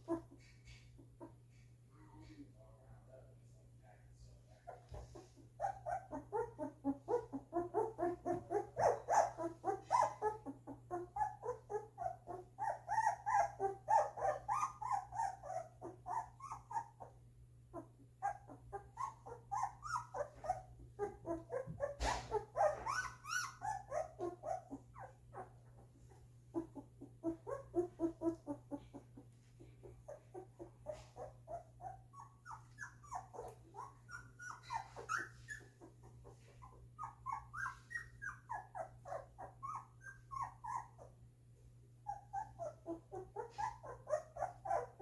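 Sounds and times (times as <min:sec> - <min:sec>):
puppies whimpering and squeaking: 0:00.0 - 0:01.7, 0:04.7 - 0:41.2, 0:41.9 - 0:45.0.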